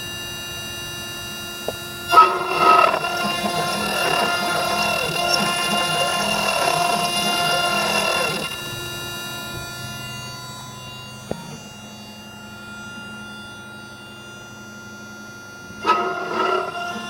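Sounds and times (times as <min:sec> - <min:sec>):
router spindle high whine: 0:00.0 - 0:17.0
wavering cutting noise: 0:02.0 - 0:14.0, 0:15.6 - 0:17.0.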